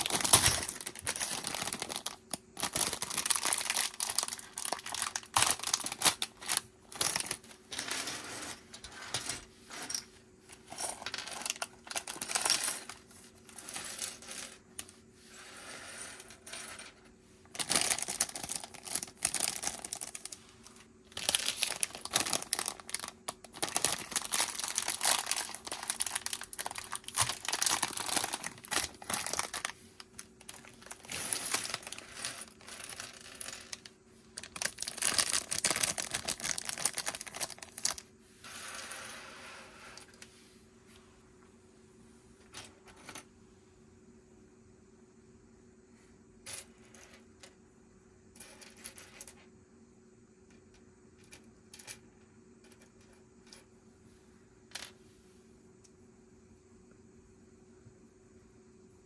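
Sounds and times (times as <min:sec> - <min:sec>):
plastic bags crinkling: 0:00.0 - 0:07.5, 0:17.6 - 0:20.4, 0:21.1 - 0:38.1
plastic pieces clicking and clattering: 0:00.0 - 0:07.9, 0:10.7 - 0:13.0, 0:17.6 - 0:20.4, 0:21.1 - 0:38.0.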